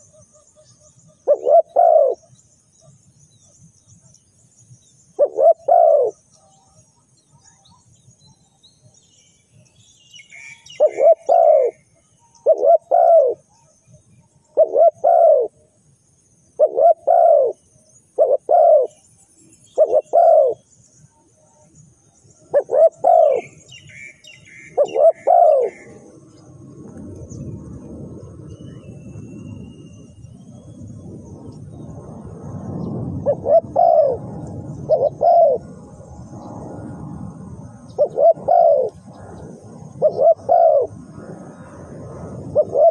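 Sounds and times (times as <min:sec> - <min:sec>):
dove cooing: 0:01.2 - 0:02.3, 0:05.2 - 0:06.2, 0:10.4 - 0:11.8, 0:12.4 - 0:13.7, 0:14.5 - 0:15.6, 0:16.6 - 0:17.6, 0:18.2 - 0:19.0, 0:19.8 - 0:20.6, 0:22.5 - 0:26.2, 0:33.2 - 0:35.8, 0:37.9 - 0:39.3, 0:40.0 - 0:40.9, 0:42.6 - 0:42.9
low rushing noise: 0:24.5 - 0:42.9.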